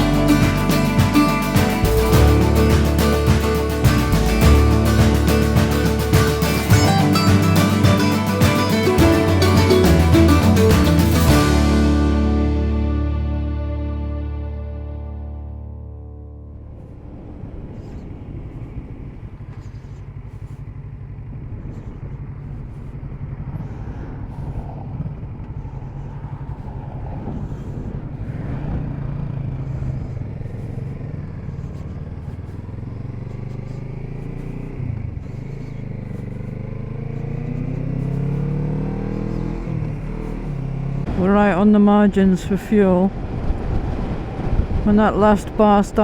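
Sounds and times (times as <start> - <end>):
motorcycle engine running: 0.0 - 46.0
road noise: 0.0 - 46.0
wind noise: 16.7 - 19.9, 41.1 - 46.0.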